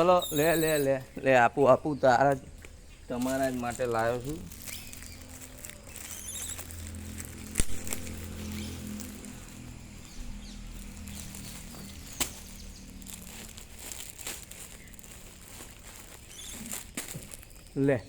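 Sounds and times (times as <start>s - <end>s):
light rustling: 2.6s - 17.7s.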